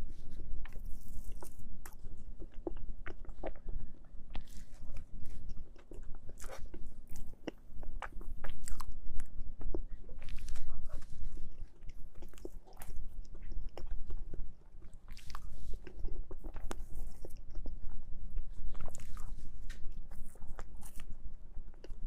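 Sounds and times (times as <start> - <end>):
chewing with wet mouth clicks: 0.6 - 22.0.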